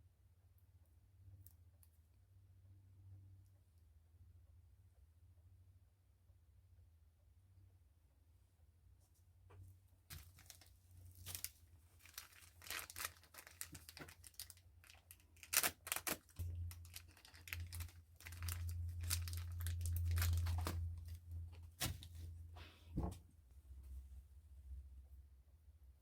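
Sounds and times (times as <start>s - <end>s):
packaging tearing and crinkling: 10.1s - 22.1s
low rumble: 16.4s - 23.2s.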